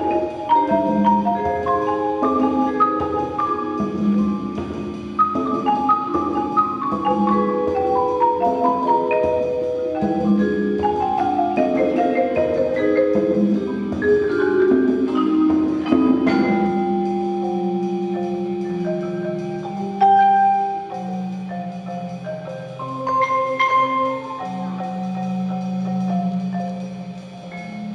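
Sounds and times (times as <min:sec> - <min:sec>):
marimba and xylophone playing: 0:00.0 - 0:27.9.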